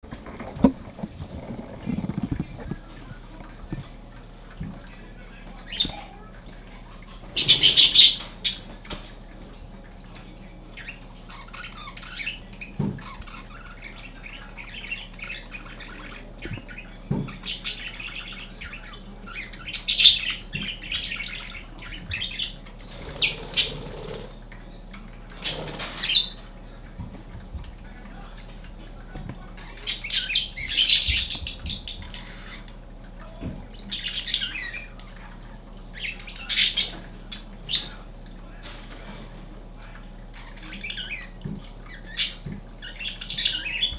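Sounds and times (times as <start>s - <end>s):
budgerigar chirping: 7.2s - 8.7s, 10.8s - 24.4s, 29.7s - 32.7s, 36.0s - 38.0s
budgerigar squawk: 7.3s - 8.6s.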